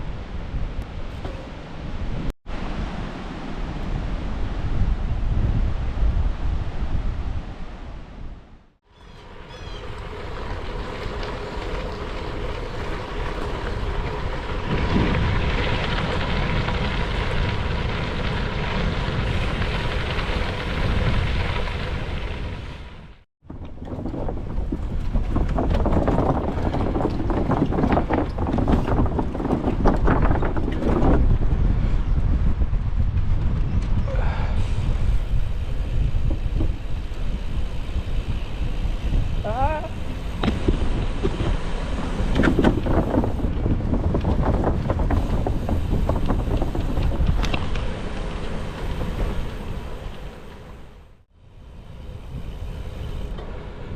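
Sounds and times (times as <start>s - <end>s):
wind buffeting microphone: 0.0s - 53.9s
bike clicks and rattles: 9.1s - 22.2s, 23.4s - 34.0s, 34.8s - 50.8s.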